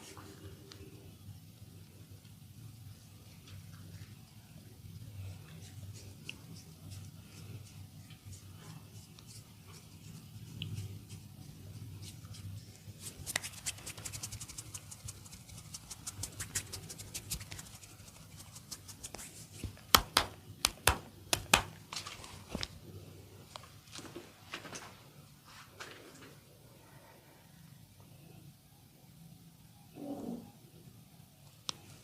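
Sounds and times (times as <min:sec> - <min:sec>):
hands tapping lightly: 0:19.6 - 0:21.8
sharp snaps: 0:19.8 - 0:21.8.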